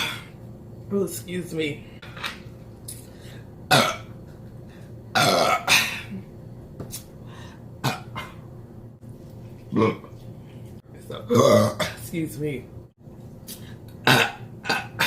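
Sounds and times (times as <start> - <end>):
person belching: 3.7 - 4.1, 5.1 - 6.2, 9.7 - 10.2, 11.0 - 12.0, 14.0 - 15.0.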